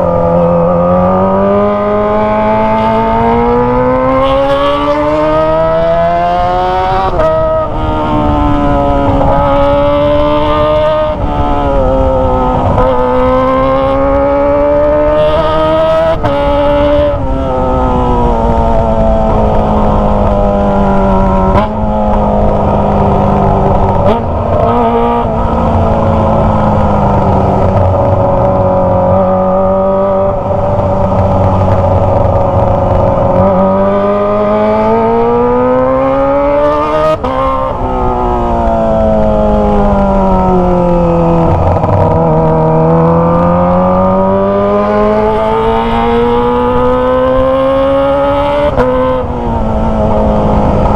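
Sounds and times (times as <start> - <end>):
motorcycle engine revving through gears: 0.0 - 50.9.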